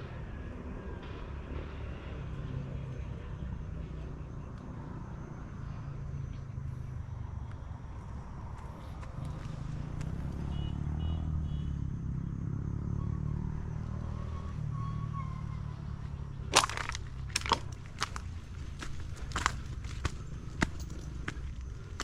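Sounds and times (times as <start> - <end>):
footsteps crunching on rough road: 7.5 - 10.6, 15.9 - 22.0
steady low rumble: 16.2 - 22.0.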